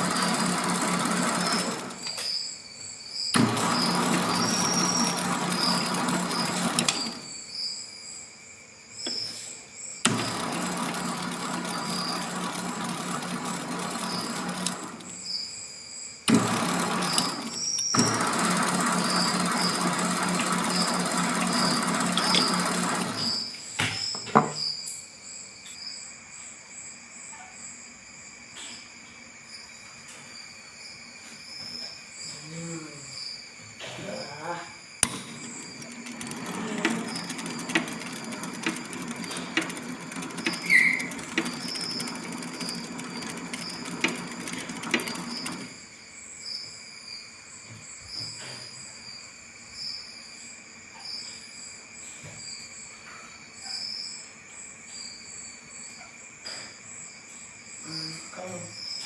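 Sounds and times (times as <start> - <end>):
lathe motor hum: 0.0 - 2.2, 3.4 - 7.2, 10.1 - 15.2, 16.3 - 23.5, 35.0 - 45.8
rough metal cutting: 0.0 - 2.2, 3.4 - 7.2, 10.1 - 15.2, 16.3 - 23.5, 35.0 - 45.8
sharp machine clicks: 0.0 - 2.3, 3.4 - 7.2, 10.1 - 15.2, 16.3 - 23.5, 35.0 - 45.8.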